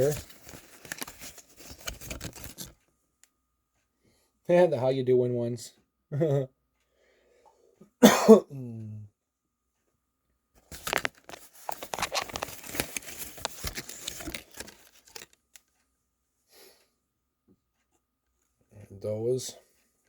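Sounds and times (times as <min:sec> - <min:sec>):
packaging tearing and crinkling: 0:00.0 - 0:02.7, 0:10.7 - 0:15.4.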